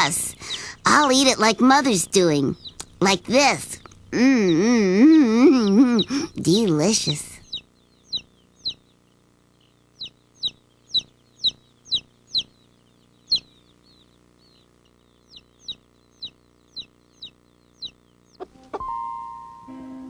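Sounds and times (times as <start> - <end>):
chicks peeping: 0.0 - 20.0.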